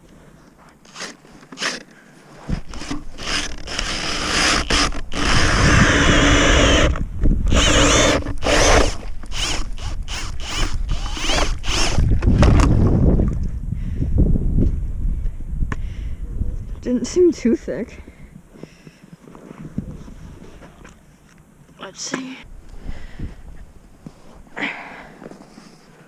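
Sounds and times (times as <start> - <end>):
auger bit grinding ice: 0.8 - 12.8
power drill motor whining: 2.6 - 12.7.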